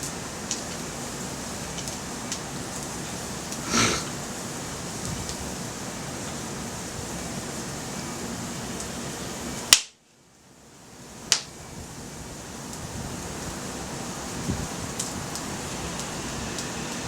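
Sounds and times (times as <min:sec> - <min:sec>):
campfire hissing: 0:00.0 - 0:17.0.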